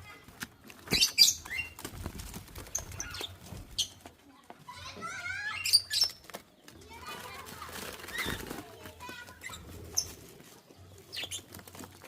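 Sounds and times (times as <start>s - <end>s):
wing flutters: 6.0s - 10.6s.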